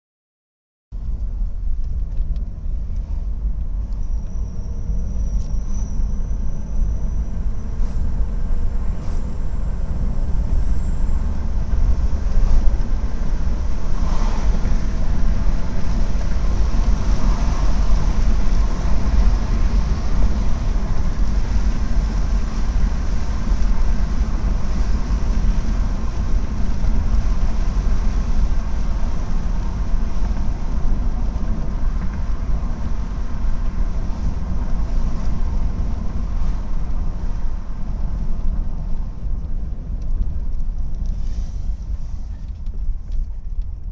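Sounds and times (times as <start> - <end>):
car engine and road noise: 0.9 - 43.9
faint rising whistle: 3.8 - 11.5.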